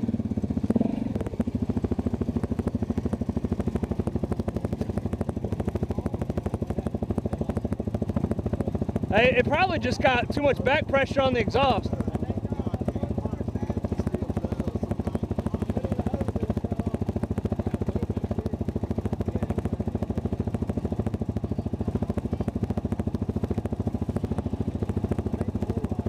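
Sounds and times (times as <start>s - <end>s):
engine idling: 0.0s - 26.0s.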